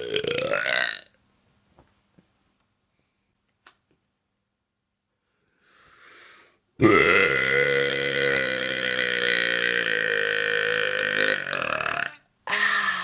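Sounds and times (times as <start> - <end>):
woman belching: 0.0 - 1.1, 6.8 - 13.0.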